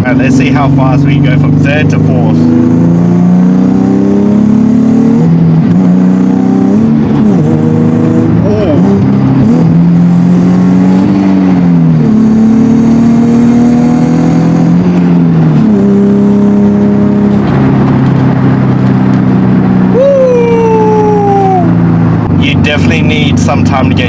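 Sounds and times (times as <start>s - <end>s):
car engine accelerating: 0.0s - 24.0s
higher tone falling in pitch: 19.9s - 22.0s.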